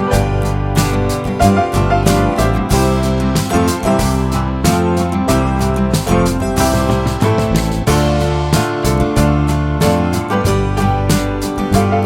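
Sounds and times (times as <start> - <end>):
upbeat guitar music with beat: 0.0 - 12.0.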